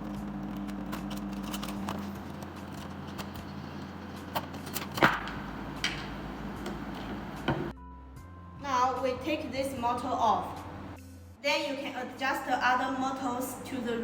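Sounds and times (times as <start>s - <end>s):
clicks and knocks of handling parts: 0.0s - 7.7s
steady low hum: 0.0s - 7.7s.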